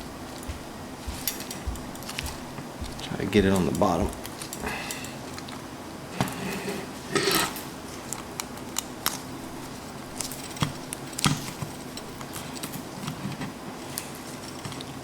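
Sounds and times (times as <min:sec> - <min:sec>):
parts scraping: 0:06.1 - 0:08.2.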